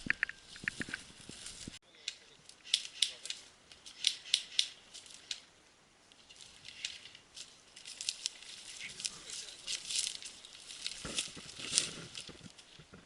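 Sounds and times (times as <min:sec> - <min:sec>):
sharp high clicks and crackles: 0:00.0 - 0:01.1, 0:02.0 - 0:05.5.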